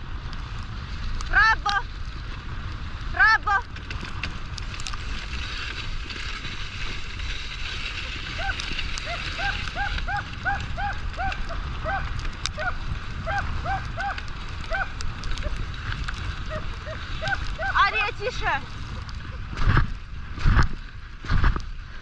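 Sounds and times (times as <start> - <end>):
dog yelping: 8.4 - 15.6, 16.4 - 18.0.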